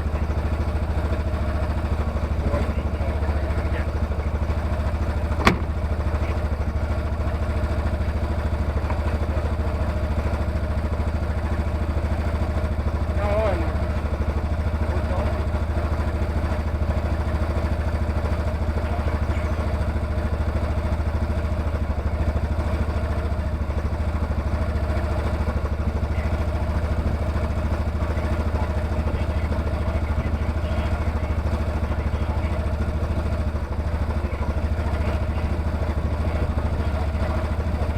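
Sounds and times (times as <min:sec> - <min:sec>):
engine idling: 0:00.0 - 0:37.9.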